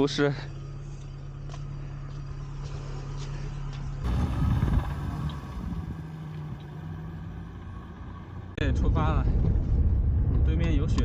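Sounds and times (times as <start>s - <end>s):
low engine rumble: 0.0s - 11.0s
motor tricycle engine idling: 4.0s - 7.6s.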